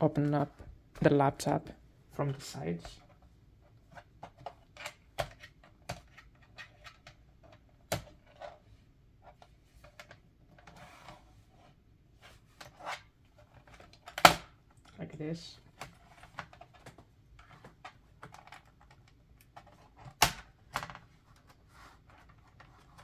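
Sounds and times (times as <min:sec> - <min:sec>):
plastic rubbing: 0:15.6 - 0:23.0.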